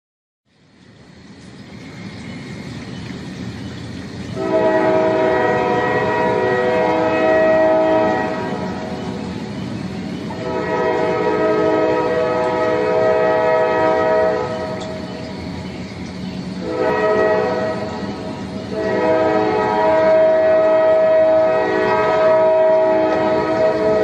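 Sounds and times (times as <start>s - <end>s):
train horn blasts: 4.3s - 9.4s, 10.2s - 15.2s, 16.6s - 24.0s.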